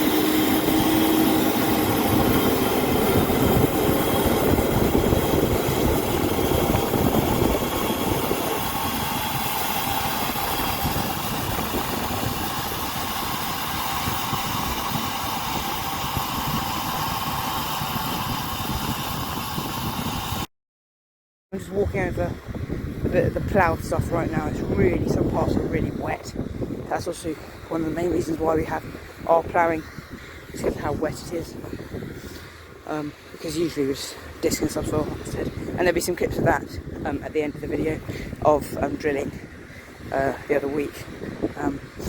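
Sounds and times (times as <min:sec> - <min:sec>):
tractor engine running: 0:00.0 - 0:20.5.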